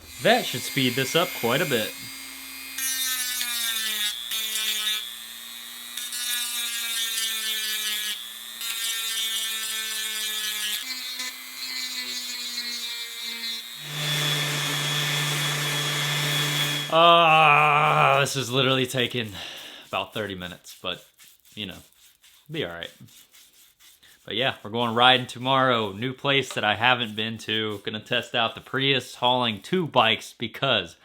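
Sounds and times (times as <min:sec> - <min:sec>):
rotary tool whining: 0:00.0 - 0:17.0.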